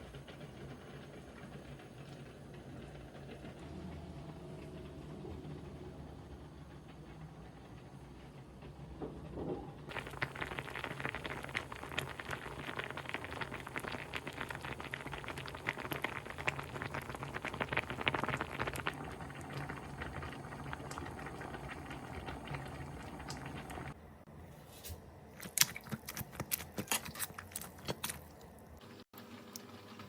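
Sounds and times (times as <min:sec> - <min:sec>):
sauce bubbling in a pot: 0:09.9 - 0:24.0.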